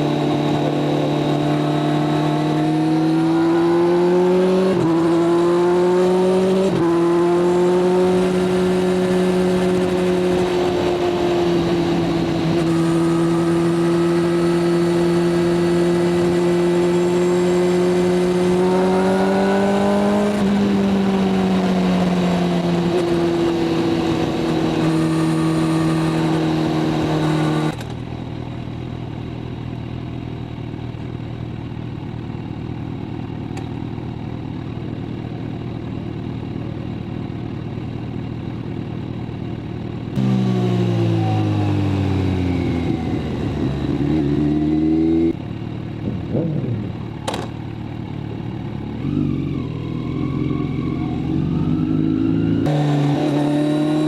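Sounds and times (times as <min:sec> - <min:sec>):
motorcycle engine pulling hard: 0:51.2 - 0:54.0.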